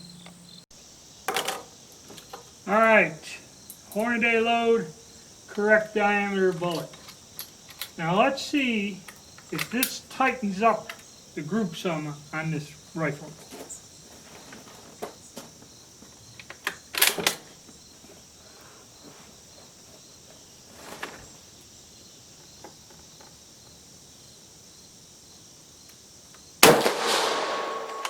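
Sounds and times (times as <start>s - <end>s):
crickets chirping: 0.0s - 28.0s
rattle: 1.3s - 2.6s
rifle shot: 26.6s - 28.0s.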